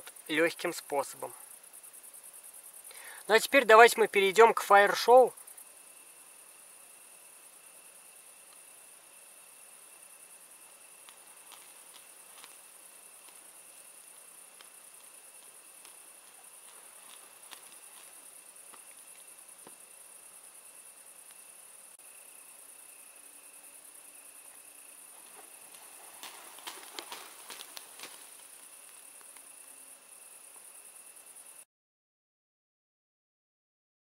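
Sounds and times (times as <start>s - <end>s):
crickets chirring: 0.0s - 31.7s
crackles and clicks: 10.9s - 19.8s, 21.2s - 21.5s, 24.5s - 29.8s
faint clicks: 25.7s - 29.6s.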